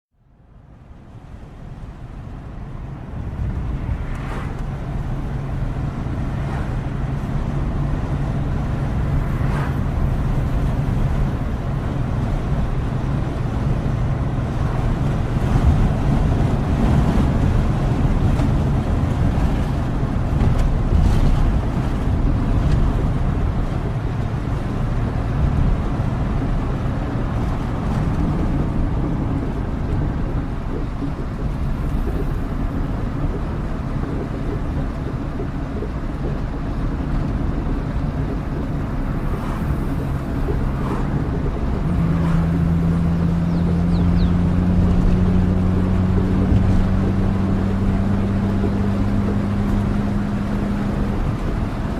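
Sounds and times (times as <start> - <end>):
road and engine rumble: 0.1 - 51.9
steady rain on vehicle: 48.3 - 51.9.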